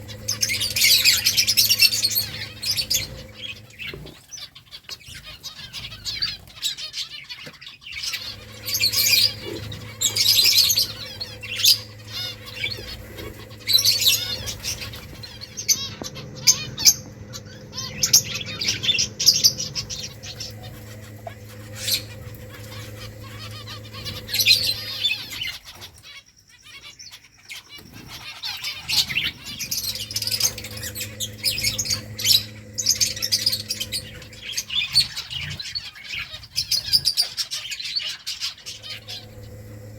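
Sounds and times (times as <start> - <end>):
steady low hum: 0.0 - 4.2, 8.0 - 25.6, 29.0 - 35.8, 38.6 - 39.9
finches chirping: 0.0 - 39.9.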